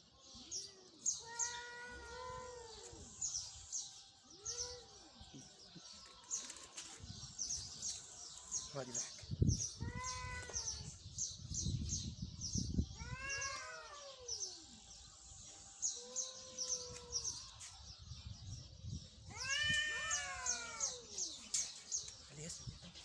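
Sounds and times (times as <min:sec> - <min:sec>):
cat meowing: 0:01.2 - 0:02.9, 0:13.0 - 0:14.3, 0:19.3 - 0:21.1.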